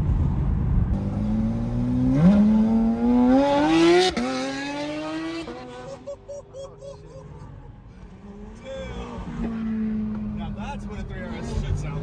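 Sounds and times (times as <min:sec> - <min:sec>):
sports car engine accelerating: 0:00.9 - 0:05.8.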